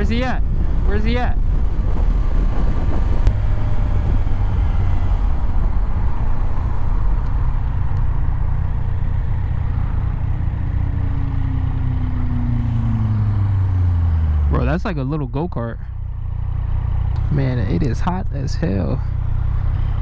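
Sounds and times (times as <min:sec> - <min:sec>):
wind rush on microphone: 0:00.0 - 0:14.2
motorcycle engine running: 0:00.0 - 0:20.0.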